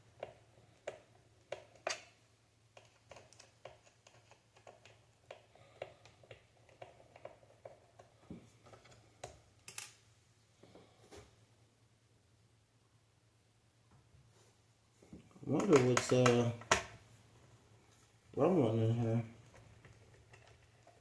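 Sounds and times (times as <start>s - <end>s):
screwdriver clicks and taps: 2.8s - 8.1s.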